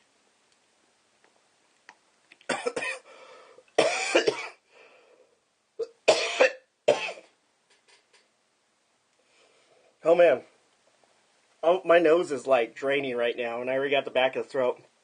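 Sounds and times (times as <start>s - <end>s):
man coughing: 2.5s - 3.1s, 3.8s - 4.6s, 5.8s - 7.3s.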